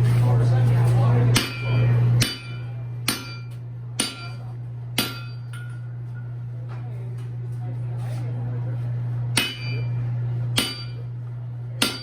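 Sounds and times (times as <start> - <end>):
low hum: 0.0 - 12.0
hammer ringing on anvil: 1.3 - 6.4, 9.3 - 11.1, 11.7 - 12.0.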